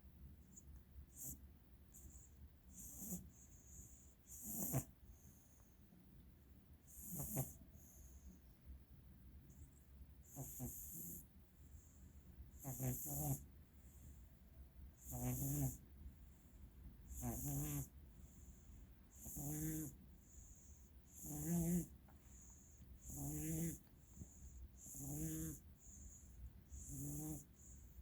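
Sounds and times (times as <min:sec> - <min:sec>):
cat snoring: 0:01.1 - 0:01.4, 0:02.7 - 0:04.9, 0:06.9 - 0:08.0, 0:10.2 - 0:11.2, 0:12.5 - 0:13.4, 0:15.0 - 0:15.8, 0:17.1 - 0:18.4, 0:19.1 - 0:27.9.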